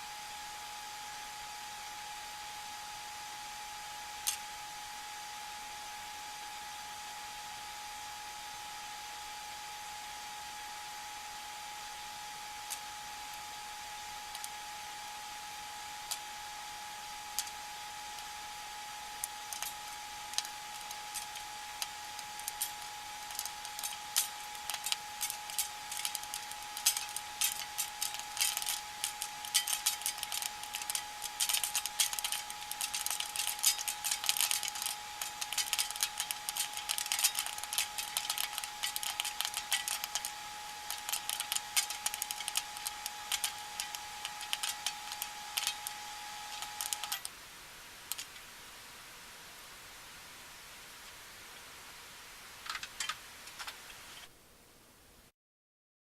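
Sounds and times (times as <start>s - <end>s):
microwave oven hum: 0.0s - 55.2s
popcorn popping: 4.2s - 4.5s, 12.2s - 47.3s, 48.0s - 48.5s, 52.6s - 54.2s.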